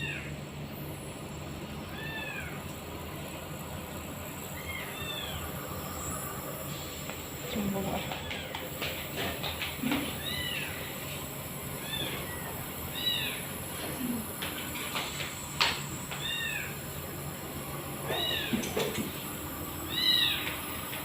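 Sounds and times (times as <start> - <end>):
nebulizer compressor humming: 0.0 - 21.0
cat meowing: 9.9 - 10.8.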